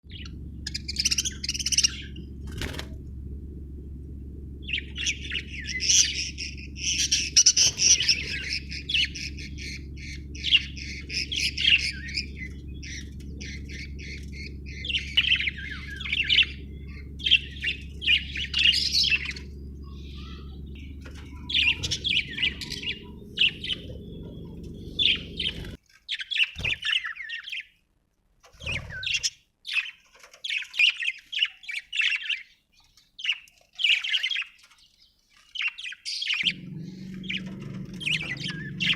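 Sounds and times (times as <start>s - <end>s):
steady low hum: 0.0s - 25.8s, 36.3s - 38.9s
budgerigar chirping and chattering: 0.1s - 2.3s, 4.6s - 27.7s, 35.6s - 38.9s.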